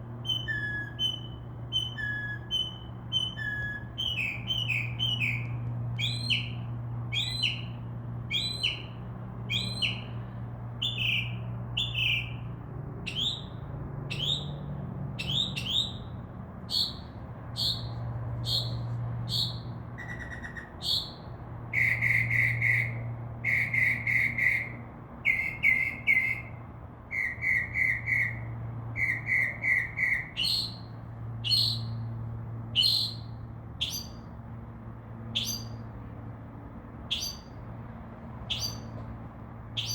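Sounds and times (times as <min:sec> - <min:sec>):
mockingbird singing: 0:00.2 - 0:10.2, 0:10.8 - 0:12.5, 0:13.1 - 0:14.6, 0:15.2 - 0:16.1, 0:16.7 - 0:28.4, 0:29.0 - 0:32.0, 0:32.8 - 0:34.3, 0:35.4 - 0:35.8, 0:37.1 - 0:37.5, 0:38.5 - 0:38.9.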